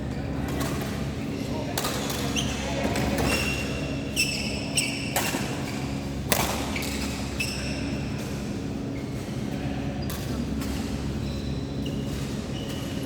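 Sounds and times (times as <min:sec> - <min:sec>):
shoes squeaking on floor: 0:02.1 - 0:06.0, 0:06.7 - 0:08.0, 0:08.9 - 0:13.0.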